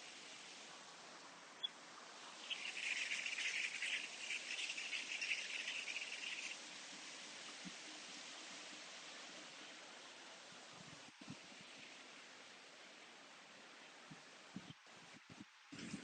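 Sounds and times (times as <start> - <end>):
background hiss: 0.0 - 16.0
insect trilling: 2.4 - 6.6.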